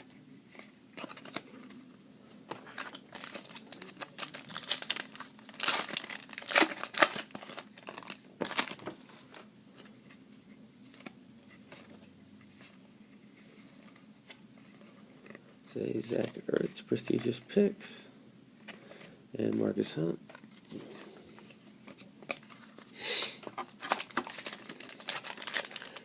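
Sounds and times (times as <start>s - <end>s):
foil wrapper crinkling and tearing: 2.8s - 8.9s, 23.8s - 26.0s.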